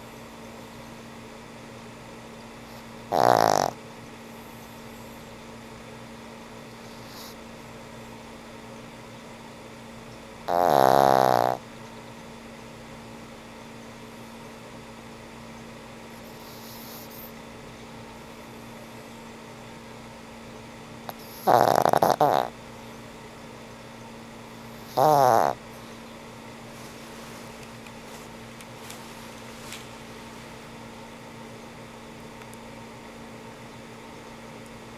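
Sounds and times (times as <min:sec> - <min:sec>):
dog snoring: 0:02.6 - 0:03.8, 0:06.8 - 0:07.4, 0:10.4 - 0:11.6, 0:16.2 - 0:17.3, 0:21.1 - 0:22.6, 0:24.7 - 0:25.8.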